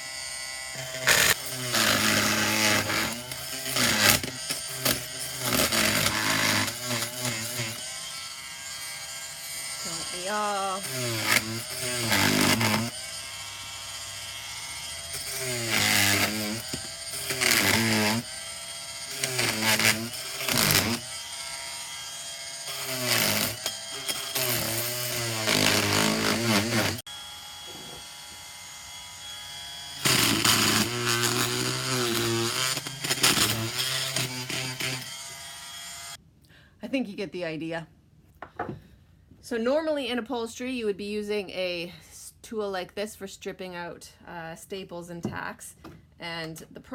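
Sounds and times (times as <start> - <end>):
oscillating multi-tool buzzing: 0.0 - 36.2.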